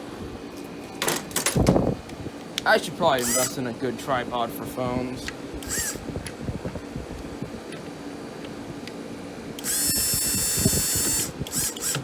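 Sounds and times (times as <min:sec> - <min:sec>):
steady low hum: 0:00.0 - 0:12.0
electric drill whine: 0:03.2 - 0:03.6, 0:05.6 - 0:06.0, 0:09.6 - 0:12.0.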